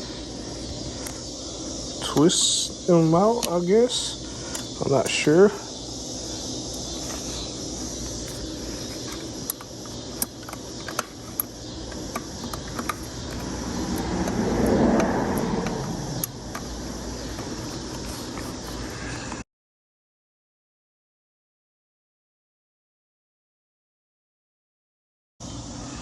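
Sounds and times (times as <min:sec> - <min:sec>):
steady background hum: 0:00.0 - 0:19.4, 0:25.4 - 0:26.0
car passing: 0:12.8 - 0:18.5.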